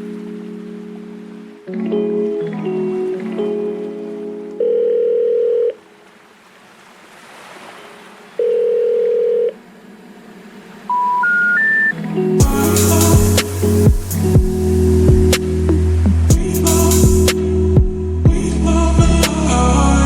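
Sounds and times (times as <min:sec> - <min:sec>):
electronic speed controller beeps: 0:10.9 - 0:12.6
music with a beat: 0:12.4 - 0:19.6.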